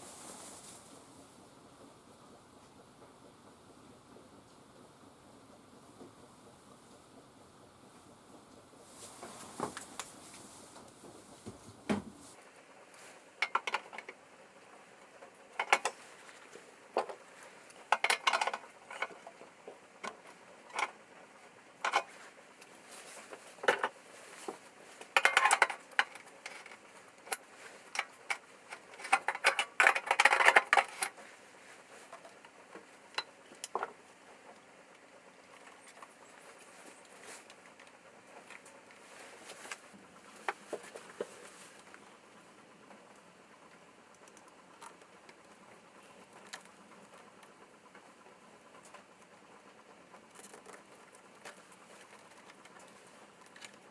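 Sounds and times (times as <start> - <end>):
small parts and tools clattering: 13.4 - 14.2, 15.6 - 21.0, 21.8 - 34.0.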